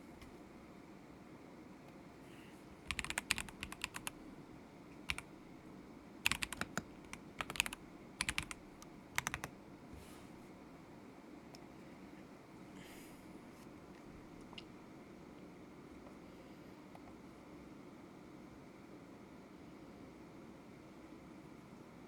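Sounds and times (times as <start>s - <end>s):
mechanical keyboard key clacks: 6.3s - 8.6s.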